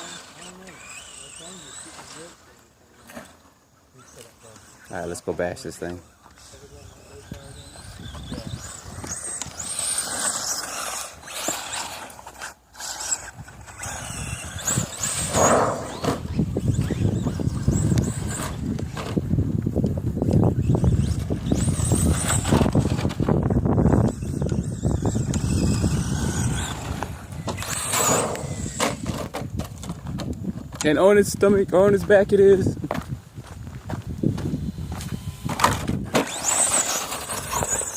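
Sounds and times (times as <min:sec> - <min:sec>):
electric motor whining: 0:00.0 - 0:30.9, 0:34.0 - 0:37.9
tyres crunching on dirt: 0:24.2 - 0:37.9.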